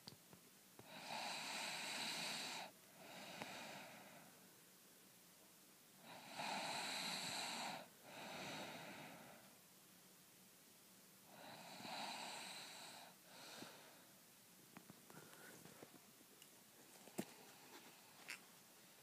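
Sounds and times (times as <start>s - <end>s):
person snoring: 0.9s - 4.3s, 6.0s - 9.5s, 11.3s - 13.8s.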